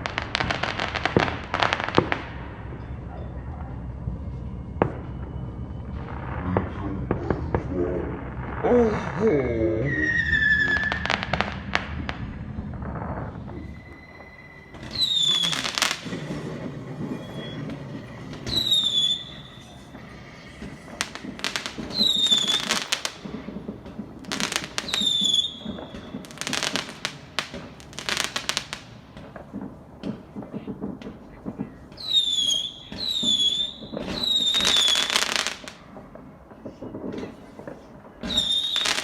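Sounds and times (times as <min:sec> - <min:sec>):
firework crackling: 0:00.0 - 0:02.7, 0:04.9 - 0:39.0
firework bangs: 0:00.0 - 0:02.9, 0:10.0 - 0:39.0
firework whistles: 0:09.8 - 0:36.1, 0:38.2 - 0:39.0.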